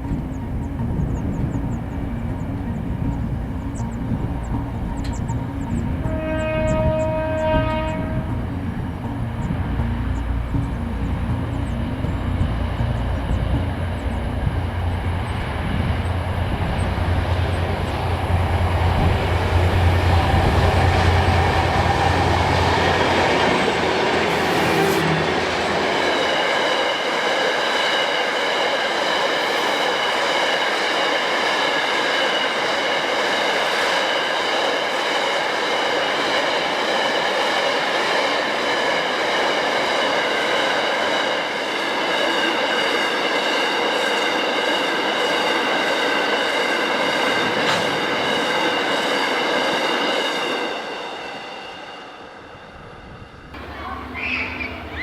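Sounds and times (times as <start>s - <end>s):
diesel locomotive rumble: 0.0s - 27.1s, 53.1s - 55.0s
train wagons rolling on rails: 0.0s - 52.0s, 53.5s - 55.0s
high ringing from train wheels: 0.0s - 55.0s.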